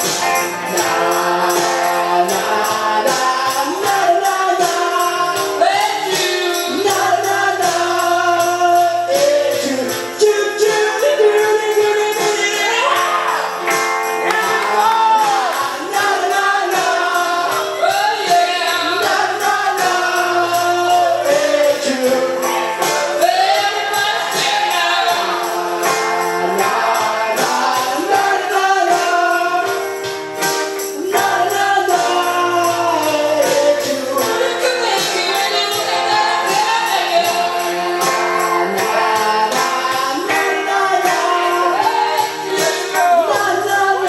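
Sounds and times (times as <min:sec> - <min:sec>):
instrumental accompaniment: 0:00.0 - 0:44.0
people singing: 0:00.0 - 0:44.0.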